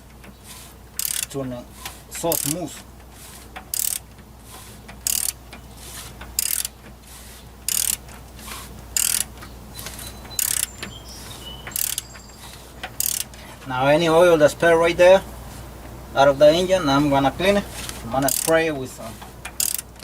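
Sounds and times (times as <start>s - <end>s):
ratchet wrench clicks: 1.0s - 1.4s, 2.1s - 2.6s, 3.6s - 4.0s, 4.9s - 5.4s, 6.2s - 6.8s, 7.7s - 8.1s, 9.0s - 9.3s, 10.3s - 10.7s, 11.7s - 12.1s, 12.9s - 13.4s, 18.2s - 18.6s, 19.4s - 20.0s.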